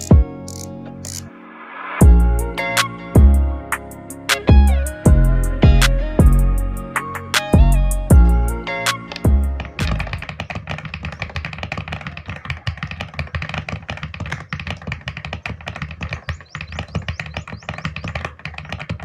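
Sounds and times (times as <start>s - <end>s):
fast mechanical keyboard typing: 0.0s - 1.2s, 9.2s - 19.0s.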